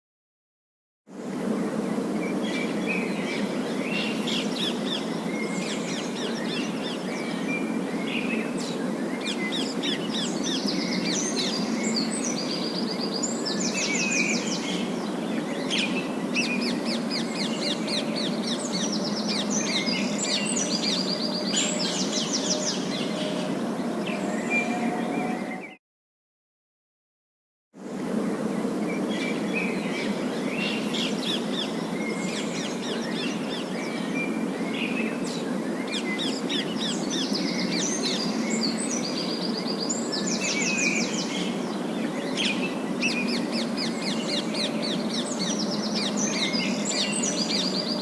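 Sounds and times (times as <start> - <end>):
steady background hiss: 1.2 - 25.6, 27.8 - 48.0.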